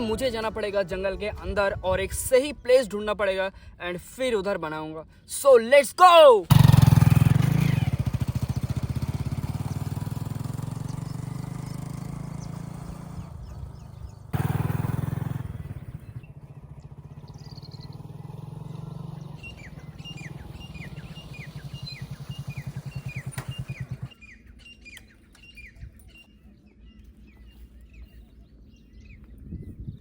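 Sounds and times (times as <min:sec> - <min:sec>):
birds chirping: 0:00.0 - 0:03.4, 0:06.6 - 0:30.0
engine running: 0:06.5 - 0:24.3.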